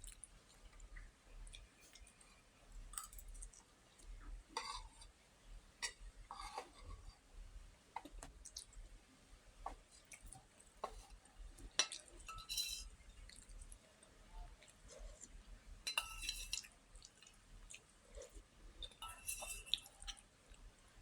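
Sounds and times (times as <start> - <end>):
person chewing: 8.1 - 8.8
dishes and utensils clinking: 11.8 - 12.9, 15.8 - 16.7, 18.8 - 20.2.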